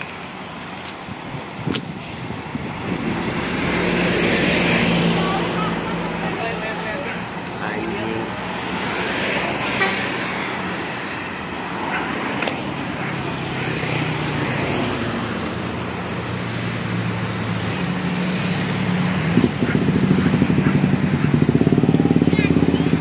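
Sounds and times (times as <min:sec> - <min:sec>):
road traffic noise: 0:00.0 - 0:23.0
vehicle engine running: 0:17.0 - 0:23.0.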